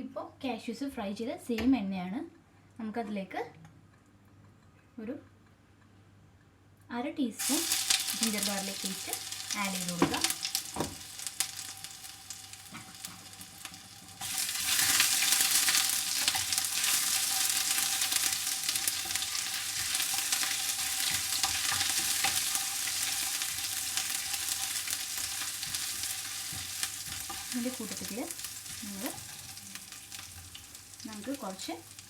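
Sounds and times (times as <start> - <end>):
paste sizzling in hot oil: 7.4 - 32.0.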